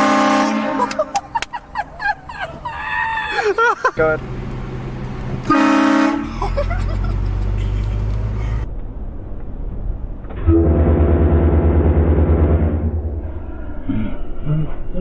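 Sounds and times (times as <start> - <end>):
air horn blasting: 0.0 - 1.0, 5.4 - 6.3, 10.4 - 13.4
low engine rumble: 0.0 - 15.0.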